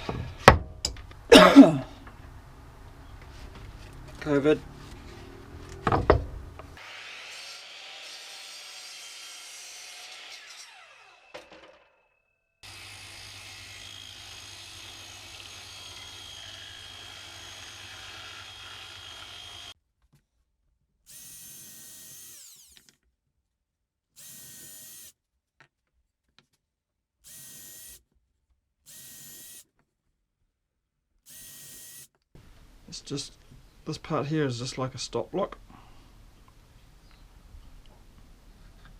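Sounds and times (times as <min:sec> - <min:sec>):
drill motor whining bursts: 0:12.6 - 0:19.7, 0:21.1 - 0:22.9, 0:24.2 - 0:25.1, 0:27.3 - 0:28.0, 0:28.9 - 0:29.6, 0:31.3 - 0:32.1
power tool humming: 0:12.6 - 0:19.8, 0:21.1 - 0:22.9, 0:24.2 - 0:25.1, 0:27.3 - 0:28.0, 0:28.9 - 0:29.6, 0:31.3 - 0:32.1.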